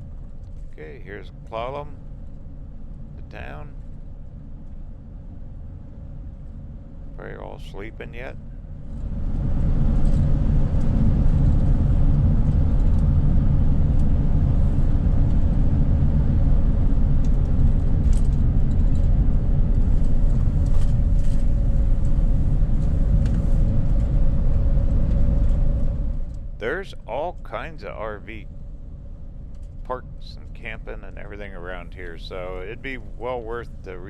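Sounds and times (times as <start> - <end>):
faint steady hum: 0.0 - 34.0
vehicle road and engine rumble: 7.2 - 28.4.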